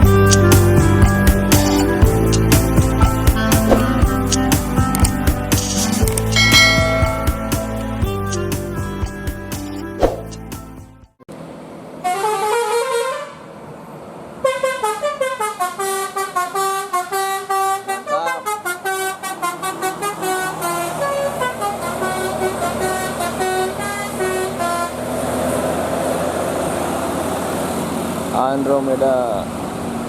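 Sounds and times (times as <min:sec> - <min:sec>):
bus horn melody: 0:00.0 - 0:09.9, 0:12.0 - 0:13.5, 0:14.4 - 0:25.9.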